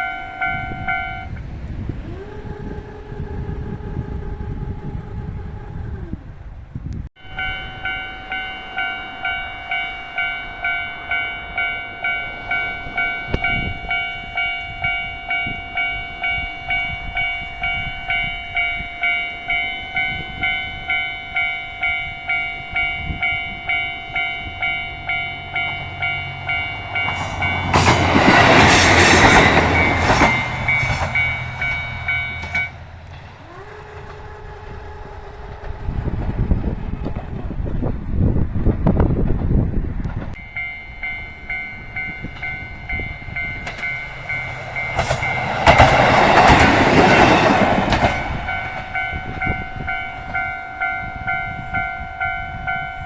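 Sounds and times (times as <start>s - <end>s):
level crossing bell clanging: 0.0s - 1.4s, 7.2s - 32.8s, 40.4s - 53.0s
diesel railcar engine droning: 0.0s - 53.0s
train wheels clacking on rail joints: 25.6s - 38.0s, 38.7s - 50.9s.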